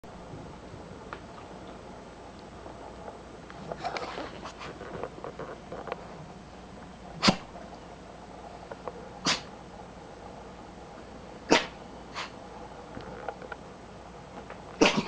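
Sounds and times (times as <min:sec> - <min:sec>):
dog sneezing: 0:07.2 - 0:07.5, 0:09.2 - 0:09.5, 0:11.5 - 0:12.4, 0:14.8 - 0:15.0.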